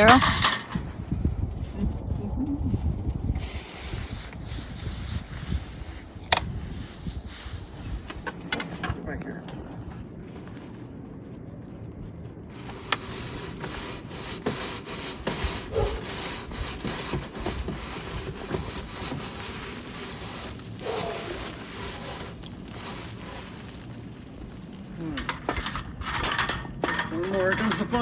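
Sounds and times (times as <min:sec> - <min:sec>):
chimney brush scraping stovepipe: 0:12.5 - 0:28.0.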